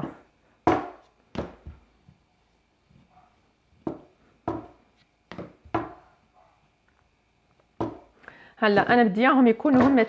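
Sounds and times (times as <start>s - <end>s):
rolling pin knocking: 0.0s - 1.8s, 3.8s - 6.0s, 7.8s - 8.1s, 9.7s - 10.0s.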